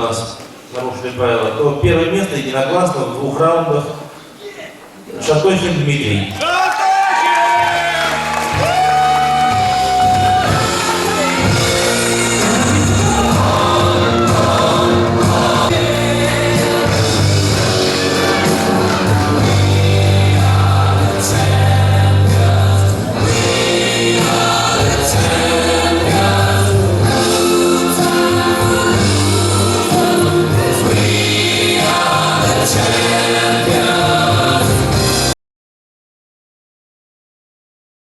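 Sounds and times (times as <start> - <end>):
music with singing and heavy bass: 7.8 - 35.3.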